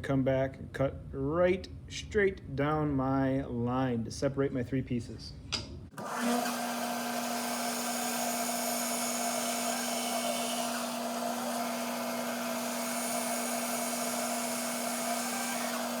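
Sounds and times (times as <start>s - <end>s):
band saw cutting wood: 5.9s - 16.0s.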